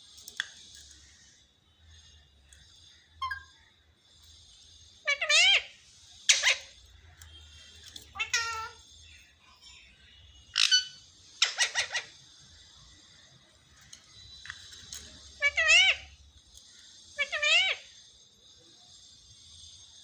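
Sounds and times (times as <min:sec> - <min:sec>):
parrot screeching calls: 0:05.0 - 0:06.8, 0:08.1 - 0:08.9, 0:10.5 - 0:12.2, 0:15.4 - 0:16.2, 0:17.2 - 0:18.0.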